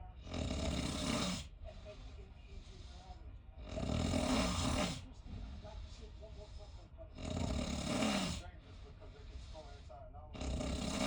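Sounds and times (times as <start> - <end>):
quiet breaths: 0.0 - 11.0
person snoring: 0.2 - 1.5, 3.6 - 5.0, 7.2 - 8.5, 10.4 - 11.0.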